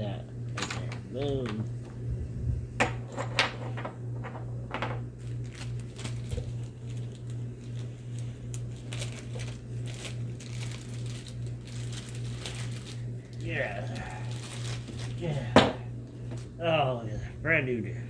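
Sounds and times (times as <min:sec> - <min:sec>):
pulsing low hum: 0:01.2 - 0:03.2.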